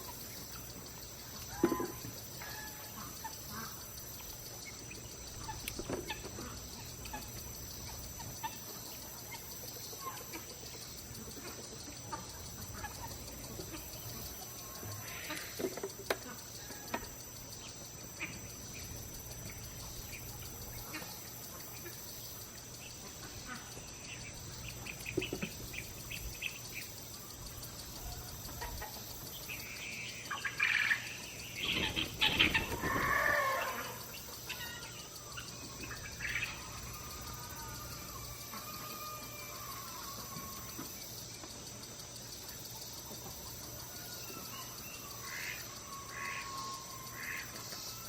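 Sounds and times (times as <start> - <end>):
birds calling: 0.0 - 48.0
faint steady high tone: 32.9 - 48.0.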